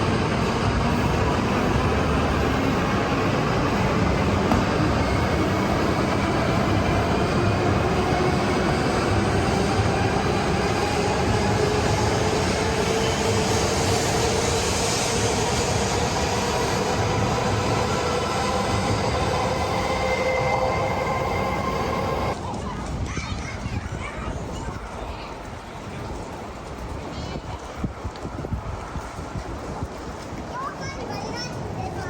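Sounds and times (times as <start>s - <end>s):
train rumbling past: 0.0s - 22.6s.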